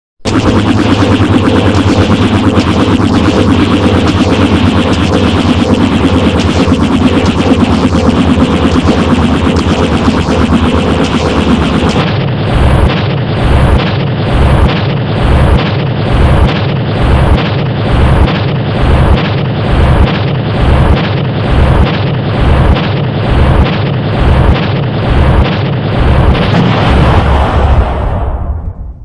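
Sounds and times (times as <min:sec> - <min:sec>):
distorted electronic noise: 0:00.3 - 0:28.3
deep booming thud: 0:20.7 - 0:29.0.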